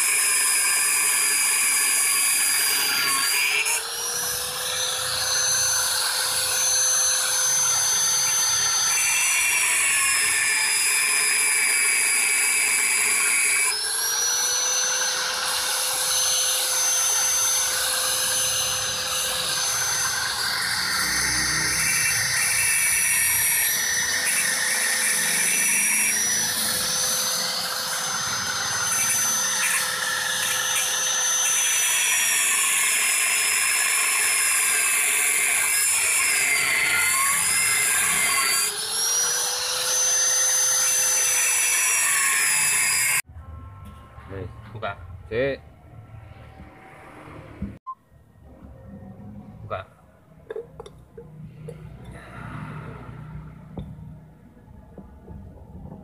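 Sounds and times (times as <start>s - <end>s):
electric power tool whining: 0.0s - 43.3s.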